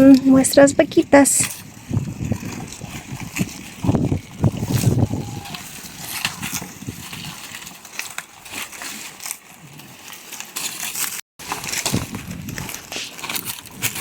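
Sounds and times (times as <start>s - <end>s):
dry plant material crunching: 1.1s - 14.0s.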